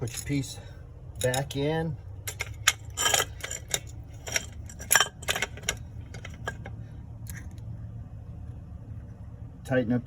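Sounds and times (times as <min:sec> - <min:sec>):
metal tools clinking: 0:00.0 - 0:06.7
steady low hum: 0:00.0 - 0:10.0.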